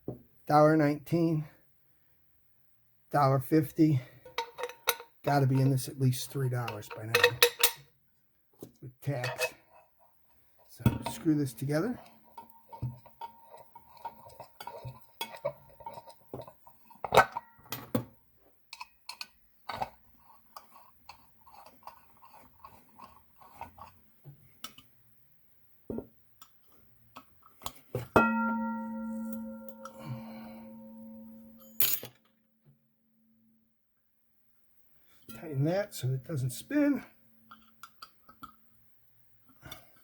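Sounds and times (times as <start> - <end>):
pan ringing tone: 28.2 - 31.8.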